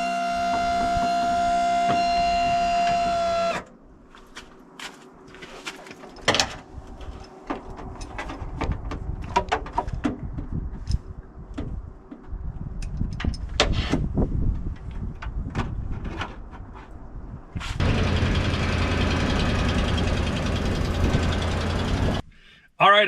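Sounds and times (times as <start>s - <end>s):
truck engine running: 17.8s - 22.2s.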